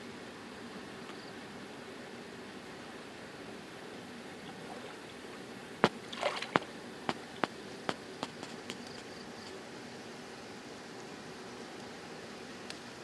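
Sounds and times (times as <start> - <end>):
water splash: 5.8 - 7.6.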